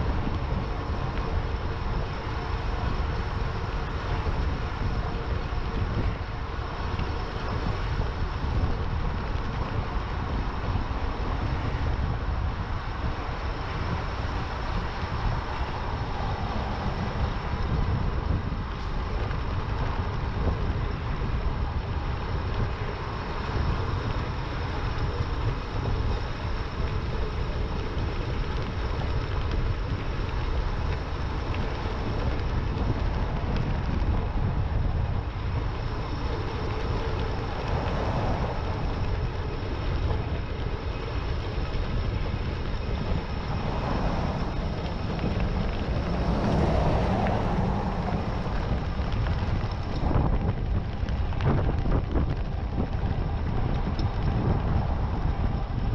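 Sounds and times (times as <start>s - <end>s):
wind noise on microphone: 0.0s - 55.9s.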